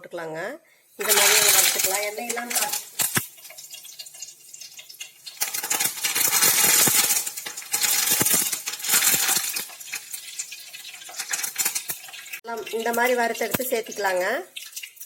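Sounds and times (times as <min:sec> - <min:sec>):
leaves sizzling in hot oil: 0:00.9 - 0:15.0
metal utensil clinking on pan: 0:01.0 - 0:13.9.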